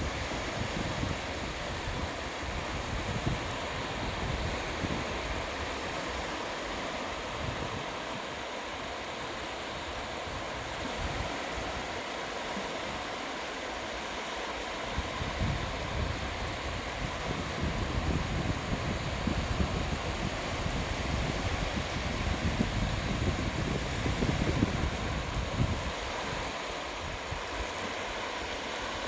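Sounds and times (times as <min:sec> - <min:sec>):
wind buffeting microphone: 0:00.0 - 0:06.3, 0:14.9 - 0:29.0
waves washing onto beach: 0:00.0 - 0:29.0.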